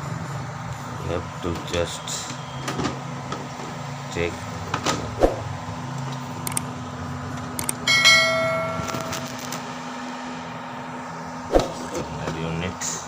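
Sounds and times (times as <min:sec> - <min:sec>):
steady low hum: 0:02.4 - 0:13.0
metallic clink ringing: 0:07.9 - 0:09.4.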